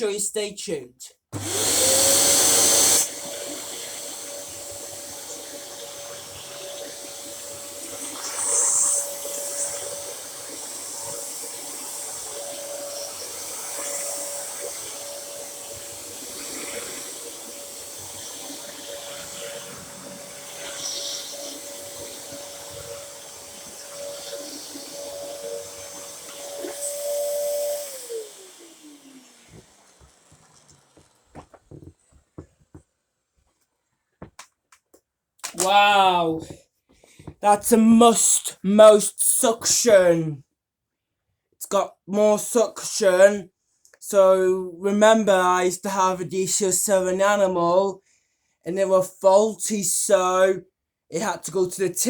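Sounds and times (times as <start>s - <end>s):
vacuum cleaner motor whine: 1.4s - 32.8s.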